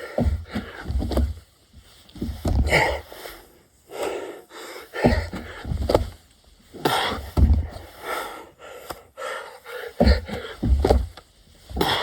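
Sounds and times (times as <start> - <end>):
man gasping breaths: 0.0 - 1.0, 2.6 - 6.0, 6.6 - 12.0
dull low thumps: 0.0 - 3.0, 4.9 - 8.0, 10.0 - 12.0.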